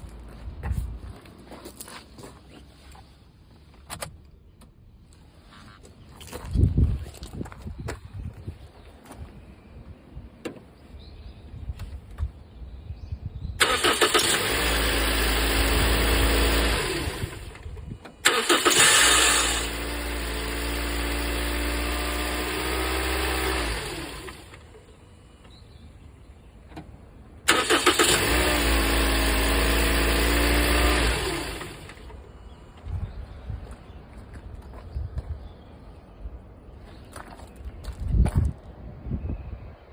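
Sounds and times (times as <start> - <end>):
starter motor cranking: 13.6 - 24.7, 27.5 - 32.2.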